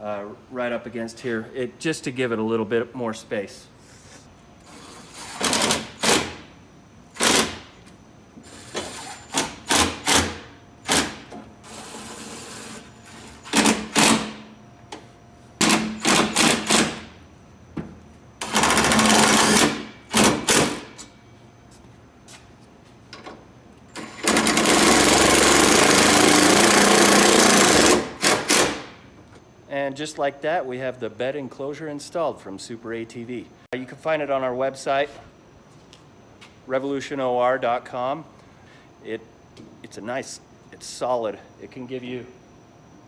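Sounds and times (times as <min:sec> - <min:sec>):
impact driver driving fasteners: 0:24.1 - 0:28.9.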